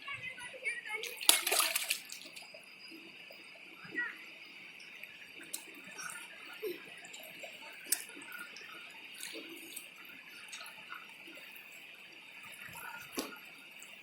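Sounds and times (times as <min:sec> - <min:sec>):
stream water running over stones: 0:01.0 - 0:02.7.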